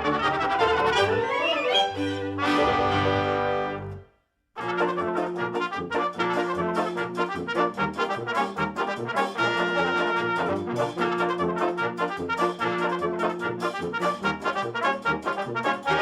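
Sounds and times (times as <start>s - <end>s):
upbeat brass band music: 0.0s - 4.0s, 4.6s - 16.0s.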